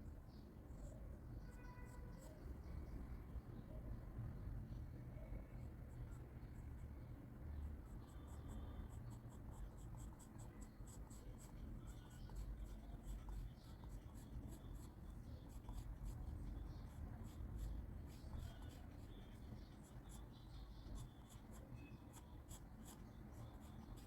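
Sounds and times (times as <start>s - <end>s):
pencil scratching on paper: 0.8s - 2.6s, 7.6s - 24.0s.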